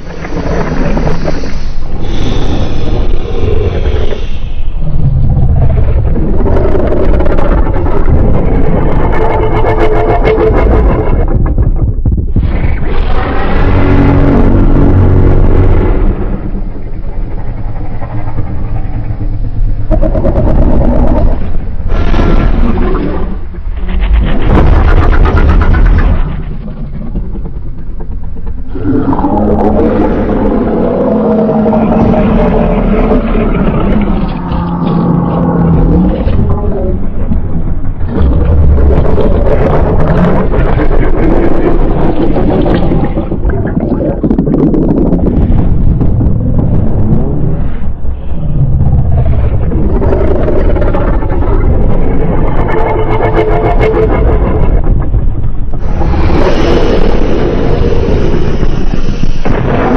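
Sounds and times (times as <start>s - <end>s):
low rumbling growl: 0.0s - 59.9s
monster roars: 2.0s - 11.3s, 12.6s - 19.1s, 28.7s - 45.6s, 46.4s - 54.9s, 55.8s - 59.9s.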